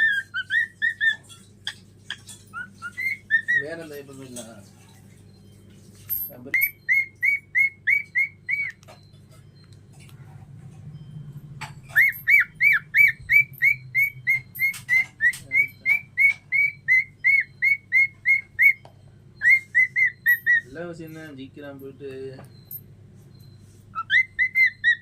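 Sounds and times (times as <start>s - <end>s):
cockatiel whistling: 0.0s - 3.8s, 6.5s - 8.9s, 11.9s - 18.8s, 19.4s - 20.8s, 23.4s - 25.0s.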